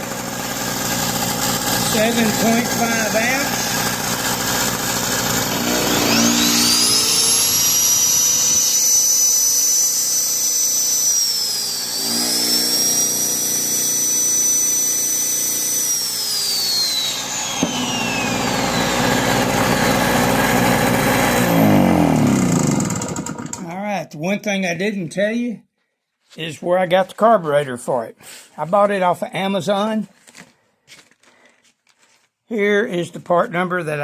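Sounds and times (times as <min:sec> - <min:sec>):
generator engine running: 0:00.0 - 0:23.6
electric drill whining: 0:00.0 - 0:23.7.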